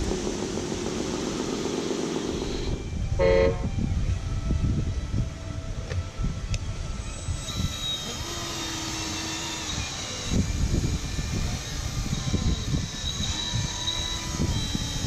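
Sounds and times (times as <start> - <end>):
whining model motor: 0.0 - 3.4, 6.2 - 15.0
wind buffeting microphone: 0.0 - 15.0.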